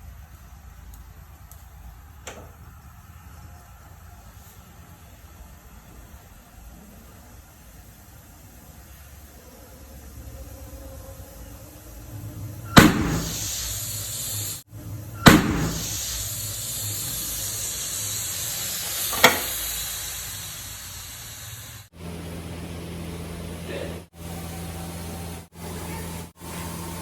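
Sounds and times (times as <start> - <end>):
hiss of escaping steam: 12.8 - 14.7, 15.3 - 21.9.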